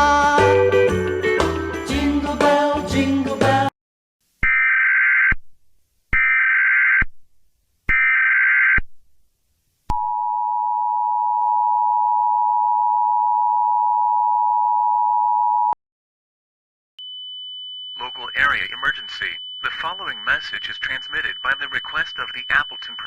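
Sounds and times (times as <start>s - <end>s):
harsh two-tone attention signal: 17.9s - 23.0s.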